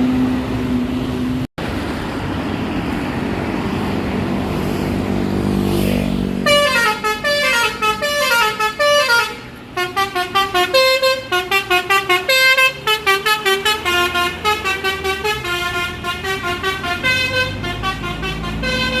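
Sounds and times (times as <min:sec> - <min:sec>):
bus engine running: 0:00.0 - 0:05.7, 0:06.4 - 0:19.0
melodic bus horn: 0:06.4 - 0:19.0.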